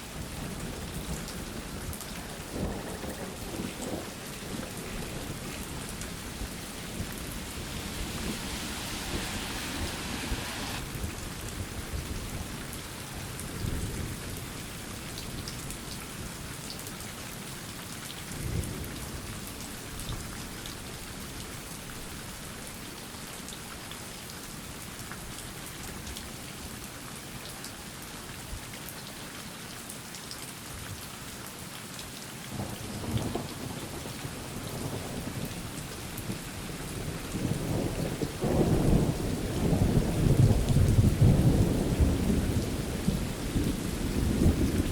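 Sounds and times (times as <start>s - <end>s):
steady rain falling: 0.0s - 44.9s
thunder rumbling: 2.4s - 10.9s.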